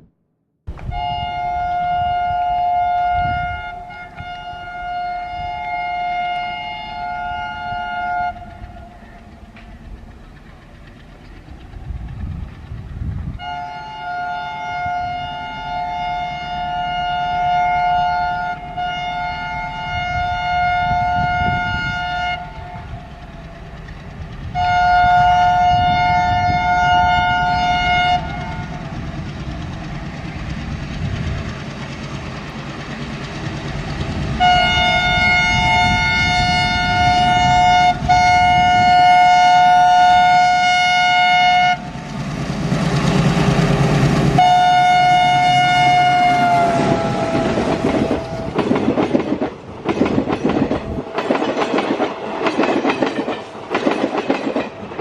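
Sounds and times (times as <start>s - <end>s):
two-tone locomotive horn blasts: 0.7s - 9.8s, 13.2s - 23.8s, 24.4s - 30.5s, 34.0s - 53.7s
diesel engine rumble: 7.0s - 13.6s, 19.9s - 52.3s.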